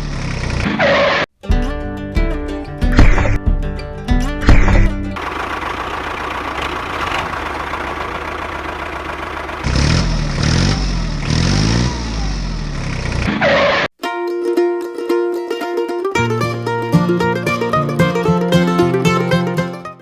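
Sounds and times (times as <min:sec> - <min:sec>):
tractor engine idling and revving: 0:04.2 - 0:13.7.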